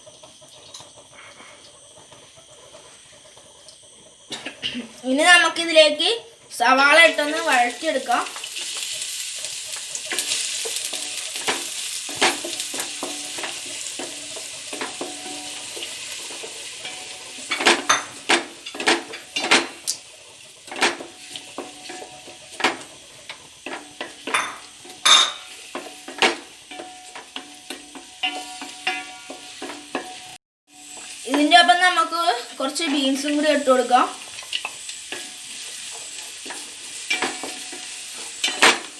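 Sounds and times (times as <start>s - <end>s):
onions sizzling in oil: 0.0s - 38.9s
spatula scraping a pan: 7.2s - 31.5s, 32.7s - 38.9s.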